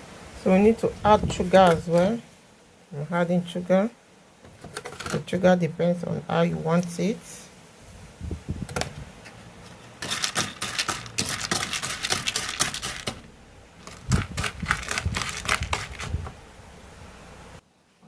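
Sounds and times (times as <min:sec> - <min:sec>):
popcorn kernels clattering in a bowl: 0:10.0 - 0:16.2.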